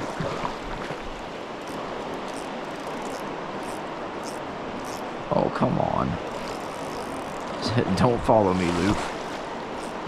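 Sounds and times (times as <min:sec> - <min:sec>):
flowing river water: 0:00.0 - 0:10.0
faint high ticks: 0:01.6 - 0:05.1.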